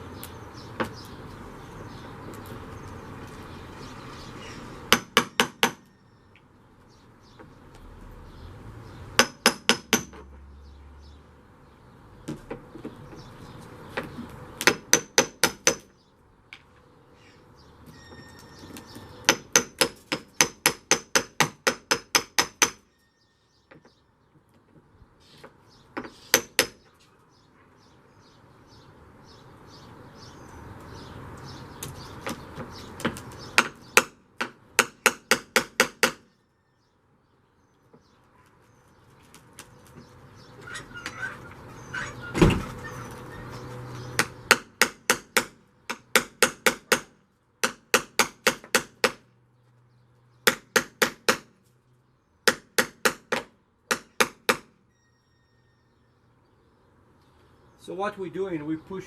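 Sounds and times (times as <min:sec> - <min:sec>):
hammer striking metal frame: 0:04.9 - 0:05.9, 0:09.2 - 0:10.3, 0:14.6 - 0:15.9, 0:19.2 - 0:22.9, 0:26.0 - 0:26.8, 0:33.6 - 0:36.3, 0:44.2 - 0:49.2, 0:50.4 - 0:51.6, 0:52.5 - 0:54.8.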